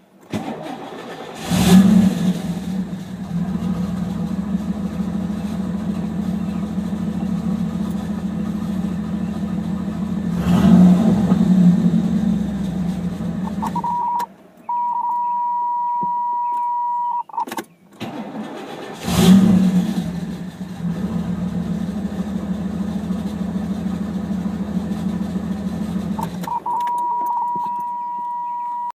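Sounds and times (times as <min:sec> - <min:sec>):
car engine idling and revving: 0:00.4 - 0:17.1, 0:18.0 - 0:28.9
high warning tone: 0:13.4 - 0:17.5, 0:26.2 - 0:28.9.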